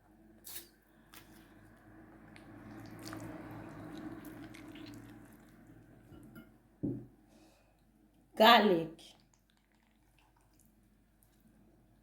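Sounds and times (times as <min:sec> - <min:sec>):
wet squishing of raw meat: 0:00.5 - 0:06.2, 0:09.1 - 0:11.7.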